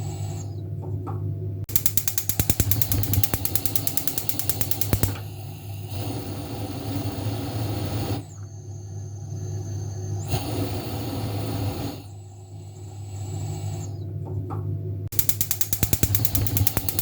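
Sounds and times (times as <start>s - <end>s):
stove igniter clicking: 1.7s - 8.2s, 15.1s - 17.0s.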